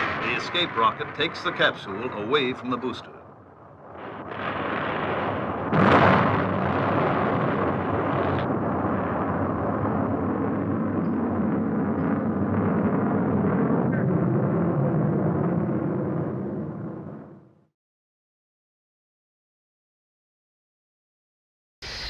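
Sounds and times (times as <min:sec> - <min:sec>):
heavy continuous rumble: 0:00.0 - 0:17.6
rocket explosion blast: 0:00.0 - 0:17.6.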